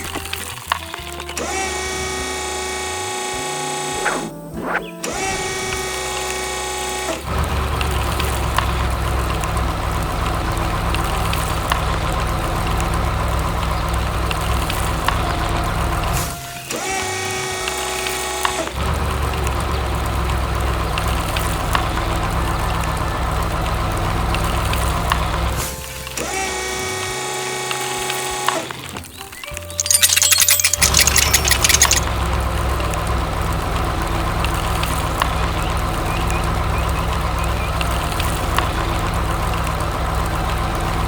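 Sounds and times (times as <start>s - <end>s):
heavy machinery engine running: 5.1s - 28.1s, 29.8s - 41.0s.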